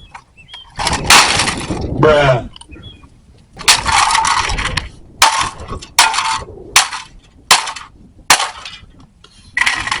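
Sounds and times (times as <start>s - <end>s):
debris rattling: 0.7s - 2.0s, 3.6s - 10.0s.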